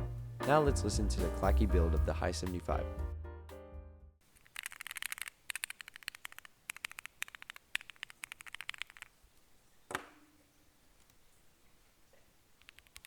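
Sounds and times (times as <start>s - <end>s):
clacky keyboard typing: 4.4s - 9.1s, 12.6s - 13.0s.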